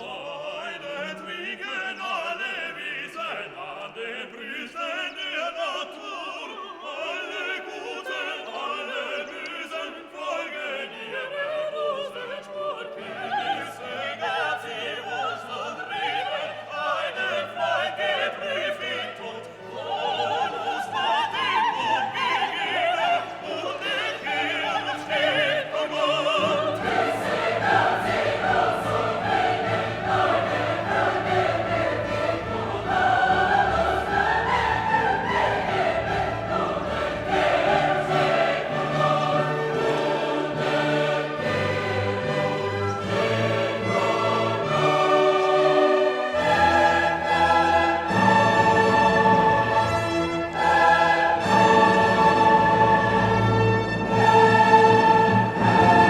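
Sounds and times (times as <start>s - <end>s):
choir singing with orchestra: 0.0s - 56.0s.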